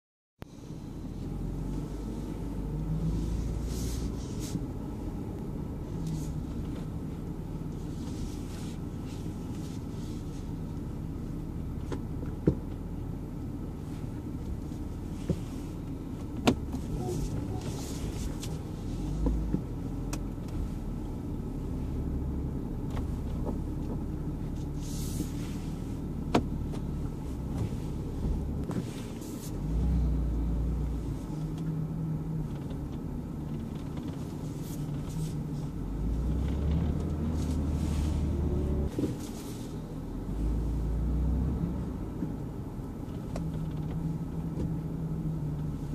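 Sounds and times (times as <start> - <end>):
road and engine rumble: 0.4 - 45.9
car body creaks and clicks: 32.4 - 35.5, 36.2 - 37.6, 43.0 - 44.8.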